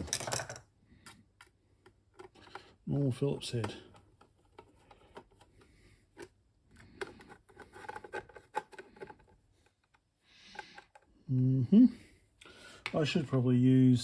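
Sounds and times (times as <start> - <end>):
screwdriver clicking and scraping: 6.2 - 9.2.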